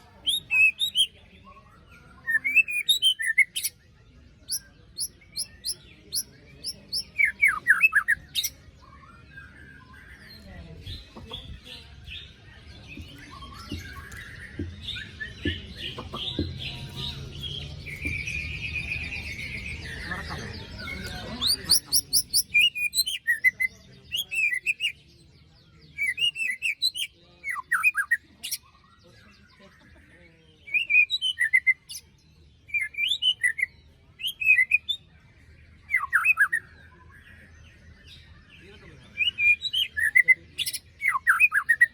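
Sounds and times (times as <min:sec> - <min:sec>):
bird singing: 0:00.0 - 0:41.9
sharp taps: 0:12.9 - 0:14.8, 0:15.4 - 0:16.7.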